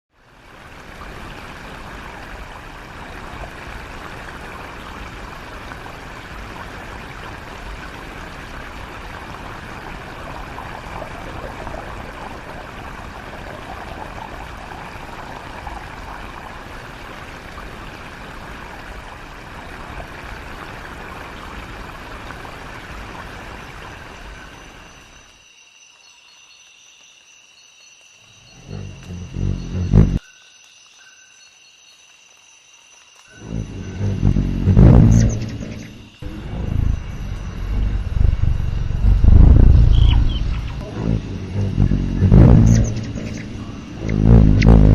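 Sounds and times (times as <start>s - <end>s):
rushing water: 0.1s - 25.6s, 28.4s - 30.2s, 33.0s - 44.9s.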